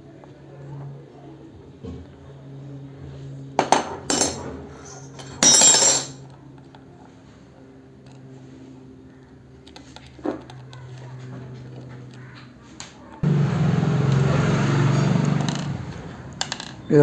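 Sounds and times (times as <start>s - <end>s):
metal tools clinking: 4.1s - 6.2s.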